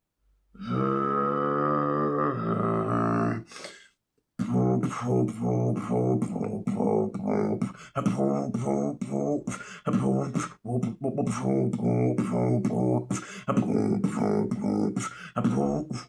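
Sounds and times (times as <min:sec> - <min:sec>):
vocal beatboxing: 0:04.4 - 0:16.0.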